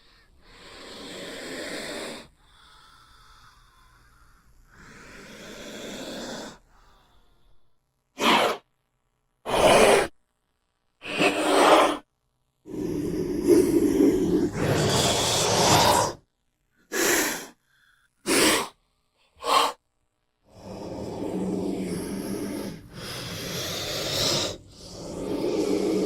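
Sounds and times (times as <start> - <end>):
cobra hissing: 0.0 - 6.6, 11.0 - 12.0, 12.7 - 16.2, 16.9 - 18.8, 19.4 - 19.8, 20.5 - 26.0.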